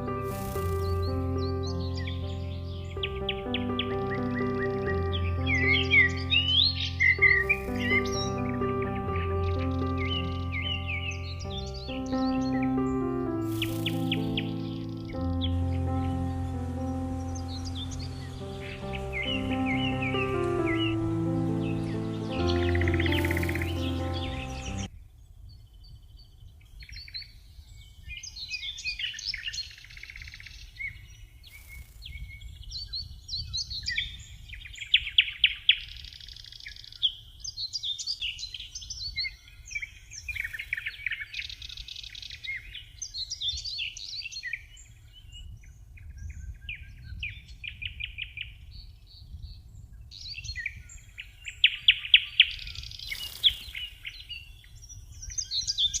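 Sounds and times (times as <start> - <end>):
songbird whistles and trills: 0.0 - 24.9.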